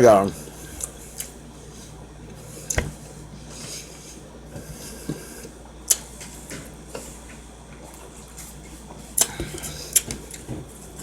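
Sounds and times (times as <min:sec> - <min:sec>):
person eating quietly: 0:03.4 - 0:10.9.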